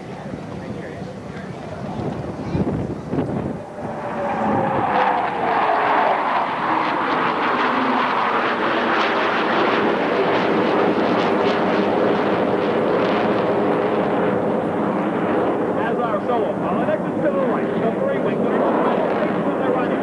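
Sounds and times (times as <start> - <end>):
jet engines roaring past: 0.0 - 20.0
jet whine falling in pitch: 3.2 - 11.0.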